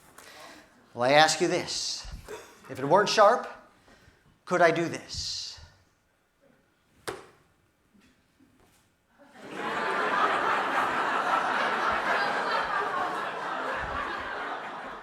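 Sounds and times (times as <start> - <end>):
audience laughter and applause: 9.3 - 15.0.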